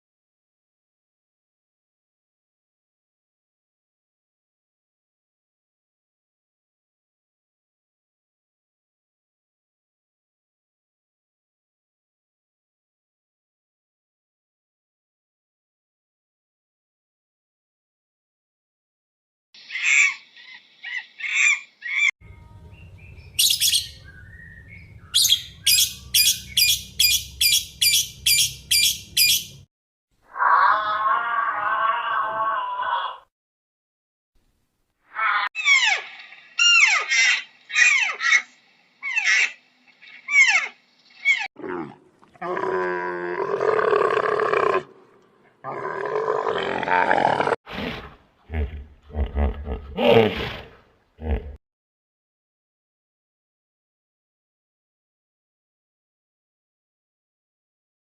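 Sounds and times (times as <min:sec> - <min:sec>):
bird chirping calls: 0:19.6 - 0:29.7
animal high falling cries: 0:30.3 - 0:33.2, 0:35.1 - 0:39.6
animal long drawn-out calls: 0:30.3 - 0:33.3, 0:35.1 - 0:47.6.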